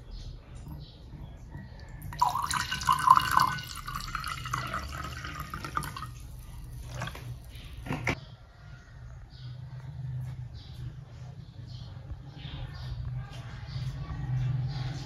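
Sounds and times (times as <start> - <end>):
faint water drips: 1.7 - 7.9
water running and splashing: 2.3 - 7.8.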